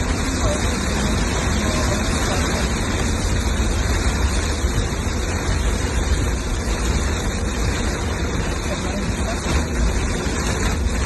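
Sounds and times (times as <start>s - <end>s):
torrential rain pouring: 0.0s - 11.0s.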